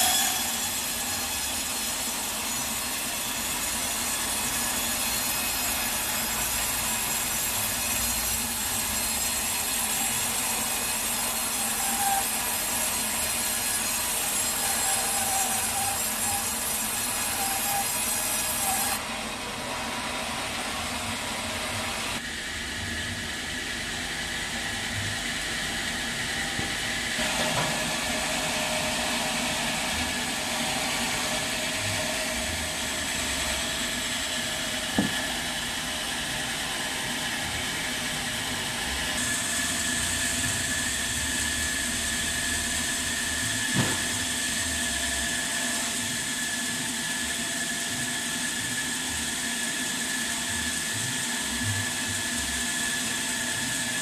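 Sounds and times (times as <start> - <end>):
sawmill machinery humming: 0.0 - 54.0
sharp knocks: 35.0 - 35.2.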